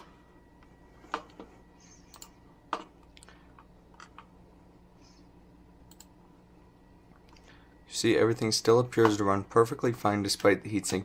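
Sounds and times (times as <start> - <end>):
faint steady hum: 0.0 - 11.0
computer mouse and keyboard clicks: 2.1 - 4.3.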